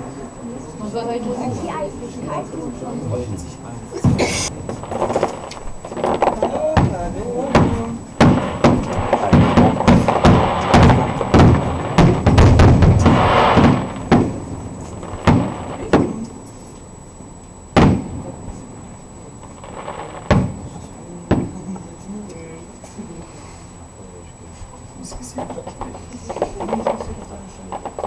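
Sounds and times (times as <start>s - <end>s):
fireworks exploding: 4.0s - 16.8s, 17.7s - 22.0s, 25.0s - 28.0s.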